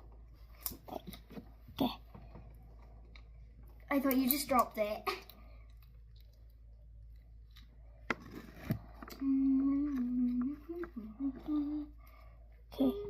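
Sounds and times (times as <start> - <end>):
child humming: 9.1 - 12.0, 12.7 - 13.0.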